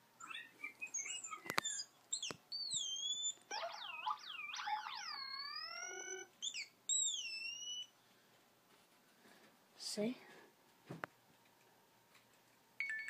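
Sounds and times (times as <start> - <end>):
toy robot electronic chirps: 0.2 - 7.9
clicks: 1.0 - 3.6.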